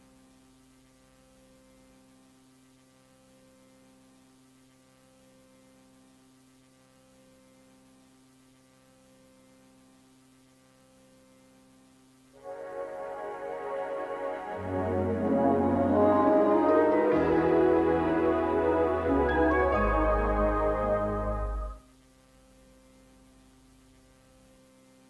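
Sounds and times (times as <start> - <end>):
low electrical hum with hiss: 0.0 - 25.0.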